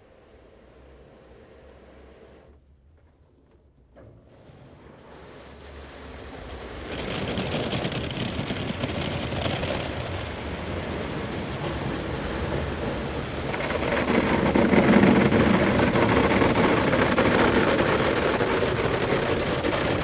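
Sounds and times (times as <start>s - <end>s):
car wash low rumble: 0.0s - 20.0s
water spraying on car: 5.0s - 20.0s.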